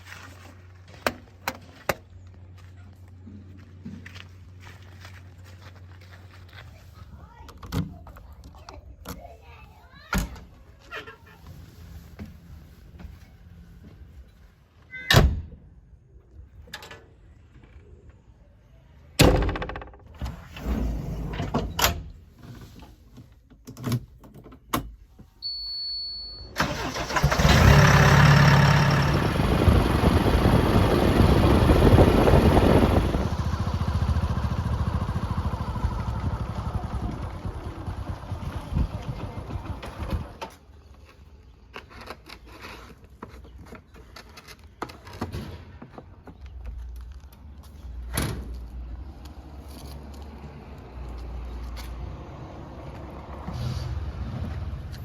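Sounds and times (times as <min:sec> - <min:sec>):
heavy diesel engine: 0:26.6 - 0:40.4.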